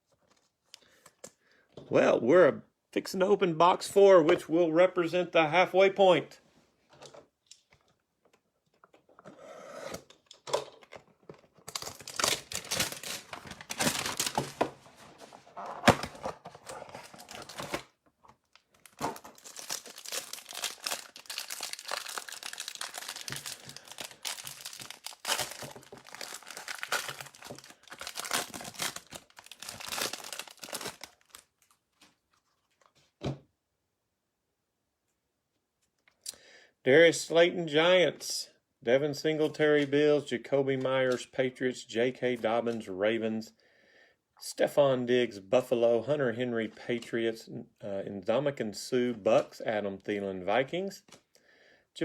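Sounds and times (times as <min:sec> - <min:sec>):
wrapper crinkling and tearing: 0:11.6 - 0:14.7, 0:15.6 - 0:32.8.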